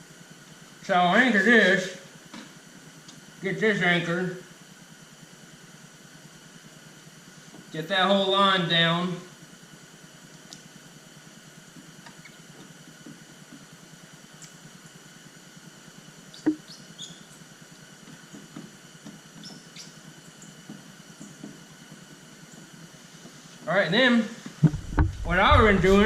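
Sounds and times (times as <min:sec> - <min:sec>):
short squeaks: 0:16.3 - 0:17.3.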